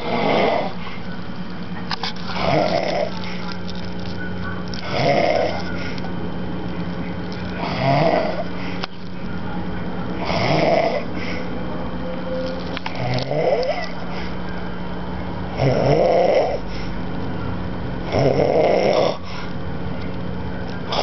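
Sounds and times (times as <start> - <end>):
man snoring: 0.0 - 0.8, 7.6 - 8.4, 10.2 - 11.1.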